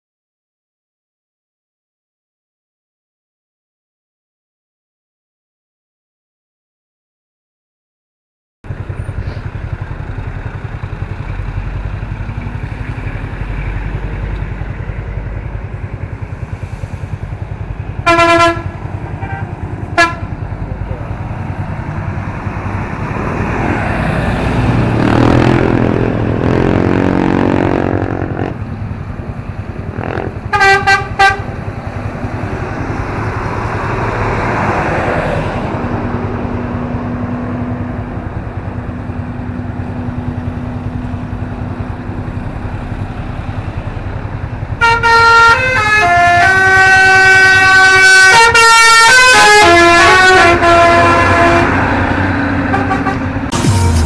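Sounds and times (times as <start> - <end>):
road traffic engines: 8.6 - 54.0
vehicle passing: 8.7 - 47.7, 49.2 - 54.0
vehicle horn honks: 18.0 - 20.3, 30.5 - 31.5, 44.8 - 51.8, 52.7 - 54.0.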